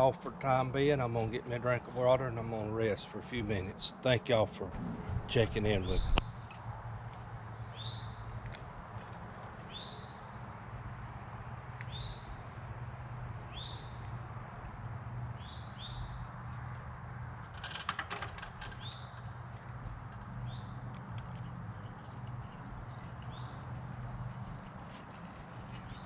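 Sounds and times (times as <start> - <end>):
bird chirping: 5.0 - 6.3.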